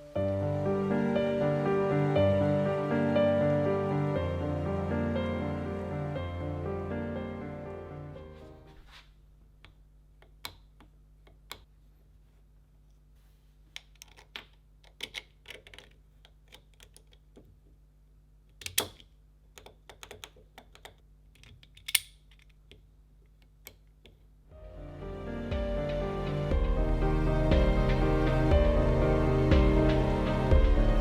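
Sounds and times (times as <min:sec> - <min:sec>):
metallic clicks of padlock: 0:18.6 - 0:22.6.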